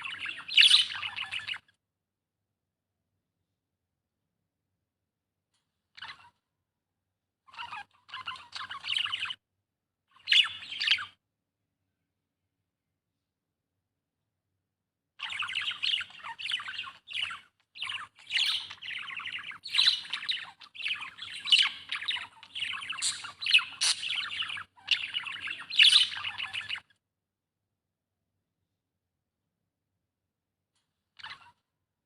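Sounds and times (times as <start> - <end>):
budgerigar chirping: 0.0 - 1.6, 10.2 - 11.2, 15.2 - 26.8.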